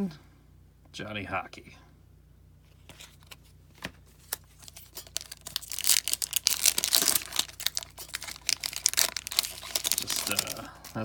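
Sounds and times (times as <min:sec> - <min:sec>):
foil wrapper tearing and crinkling: 0:04.2 - 0:11.0.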